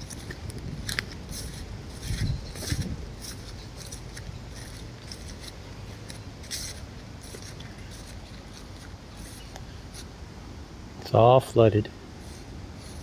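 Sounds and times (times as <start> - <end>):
faint crackles and rustles: 0.0 - 10.2
low steady rumble: 0.0 - 13.0.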